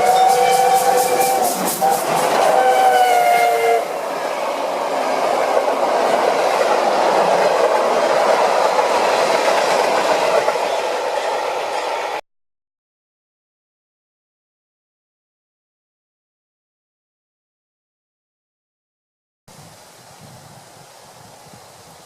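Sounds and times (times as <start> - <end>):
steam exhaust chuffs: 0.0 - 4.0
steam locomotive whistle: 0.0 - 4.3
train wheels rumbling: 0.0 - 12.2.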